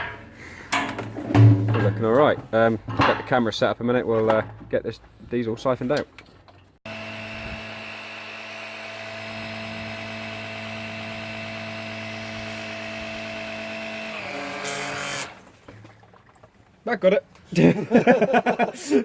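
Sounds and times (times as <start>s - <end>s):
electric pump humming: 6.9s - 15.5s.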